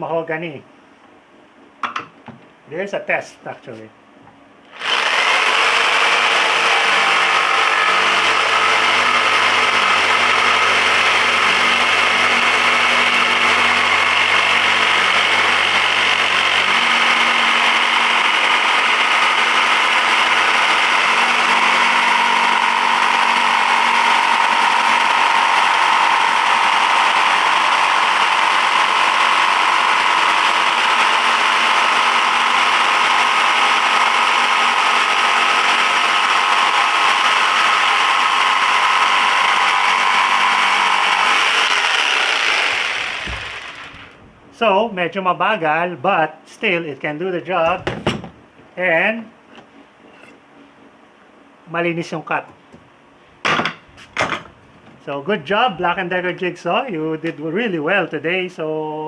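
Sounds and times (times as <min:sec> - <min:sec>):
jigsaw cutting wood: 0:04.7 - 0:44.2.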